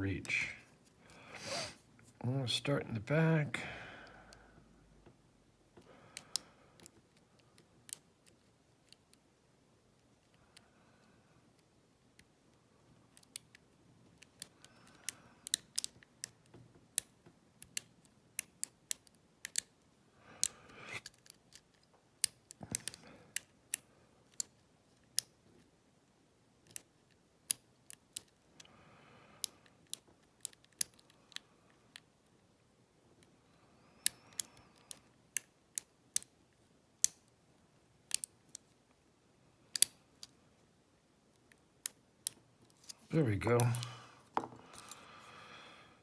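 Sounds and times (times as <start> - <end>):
lock pick clicking: 14.2 - 19.7, 38.1 - 38.6, 39.7 - 40.3, 41.4 - 44.0, 44.6 - 45.1.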